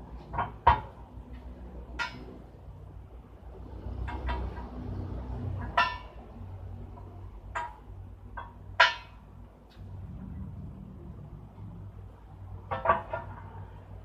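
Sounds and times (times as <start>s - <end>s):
low steady hum: 0.0s - 14.0s
metal-on-metal strikes ringing: 8.4s - 9.2s.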